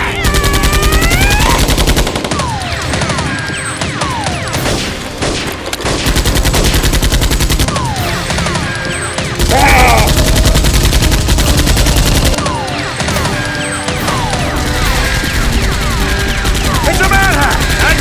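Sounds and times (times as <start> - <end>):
rapid automatic gunfire: 0.0 - 18.0.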